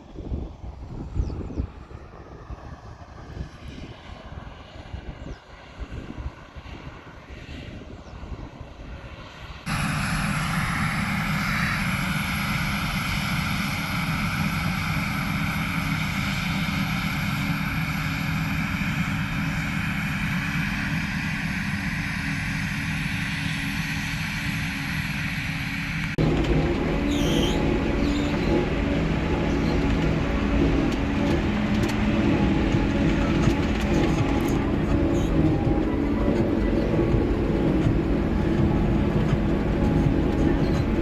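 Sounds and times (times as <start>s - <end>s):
diesel engine drone with whine: 0.0s - 41.0s.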